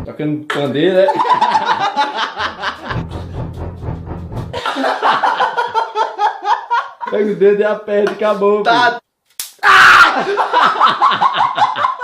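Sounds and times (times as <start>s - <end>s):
laughter: 1.0s - 3.0s, 4.5s - 7.1s, 10.1s - 12.0s
music with percussion and bass: 2.8s - 4.6s.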